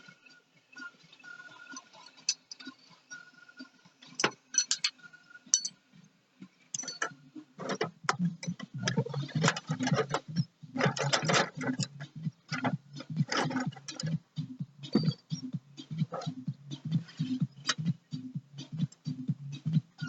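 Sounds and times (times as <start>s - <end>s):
hand tools clinking on metal: 4.2s - 5.8s, 6.7s - 11.9s.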